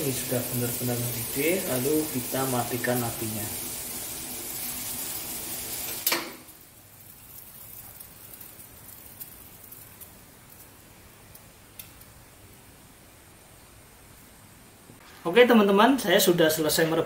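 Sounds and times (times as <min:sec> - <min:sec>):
gas burner hissing: 0:00.0 - 0:13.6.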